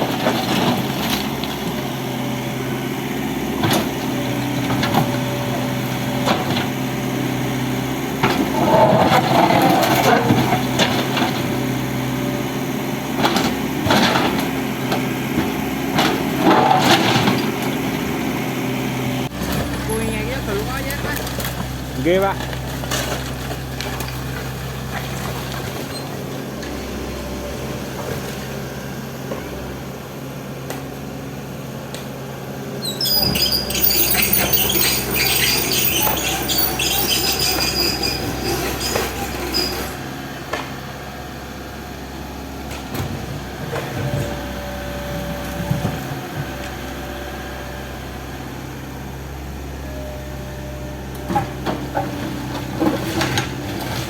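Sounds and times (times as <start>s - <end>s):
excavator engine running: 0.0s - 54.0s
high squealing and clatter: 8.2s - 11.4s, 32.8s - 40.2s.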